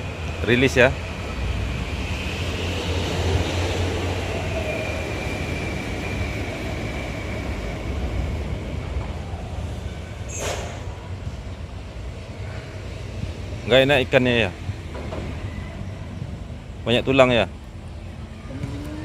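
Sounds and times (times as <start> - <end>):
vehicles rumbling over bridge: 0.0 - 19.0
short sharp noise: 10.3 - 11.0.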